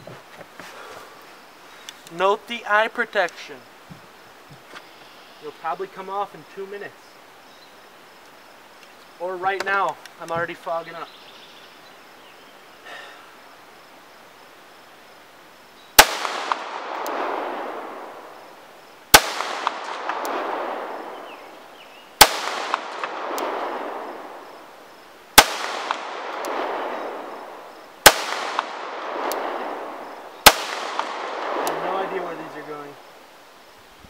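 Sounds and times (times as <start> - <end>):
handgun shots: 16.0 - 17.2, 19.1 - 20.4, 22.2 - 23.6, 25.4 - 26.7, 28.0 - 29.5, 30.4 - 31.8
rolling gunshot echo: 16.0 - 18.1, 19.1 - 21.2, 22.2 - 24.4, 25.4 - 27.4, 28.0 - 32.2.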